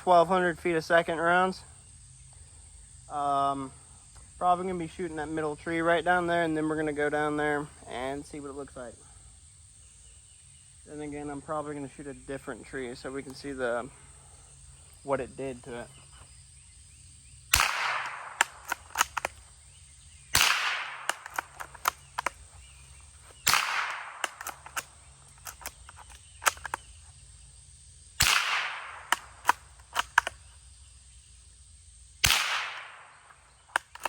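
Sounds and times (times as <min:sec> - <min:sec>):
rifle shots with echo: 0:17.5 - 0:19.4, 0:20.3 - 0:22.3, 0:23.4 - 0:25.6, 0:28.2 - 0:30.3, 0:32.2 - 0:34.0
rifle bolt clicks: 0:17.6 - 0:19.4, 0:20.4 - 0:22.4, 0:23.5 - 0:26.8, 0:28.2 - 0:30.4, 0:33.7 - 0:34.0.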